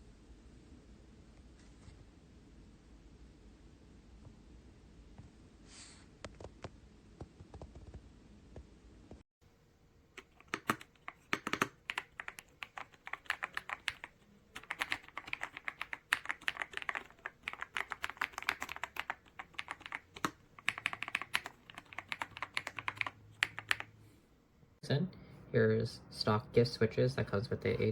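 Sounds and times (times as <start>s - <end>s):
mechanical keyboard typing: 10.1s - 23.9s.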